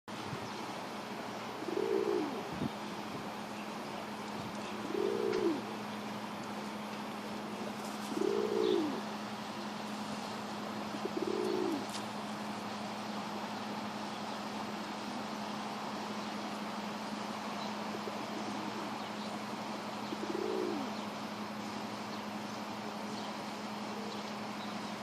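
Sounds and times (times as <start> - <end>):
pigeon cooing: 1.5 - 2.6, 4.6 - 6.0, 7.4 - 9.1, 10.8 - 12.0, 17.9 - 19.2, 19.8 - 21.0.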